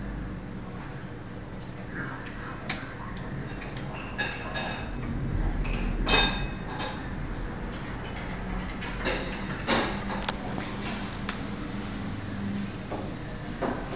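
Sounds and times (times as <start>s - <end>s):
washing machine humming: 0.0s - 13.9s.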